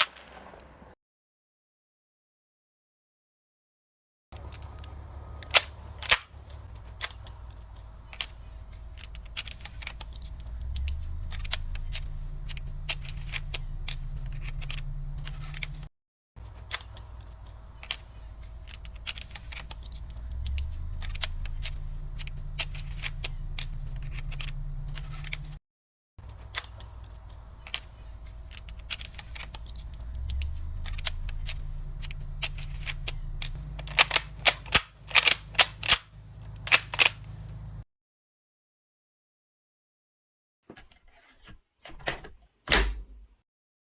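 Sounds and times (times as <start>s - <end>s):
rifle metallic clicks: 0.0s - 0.8s, 4.4s - 15.8s, 16.6s - 25.5s, 26.3s - 37.3s
low hum: 4.4s - 15.9s, 17.0s - 25.6s, 27.4s - 34.7s.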